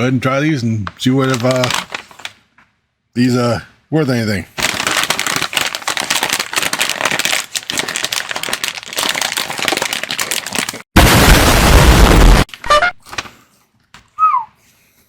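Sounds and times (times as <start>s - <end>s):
chip bag crinkling: 1.2s - 2.4s, 4.6s - 10.9s
bag tearing open: 4.6s - 10.8s.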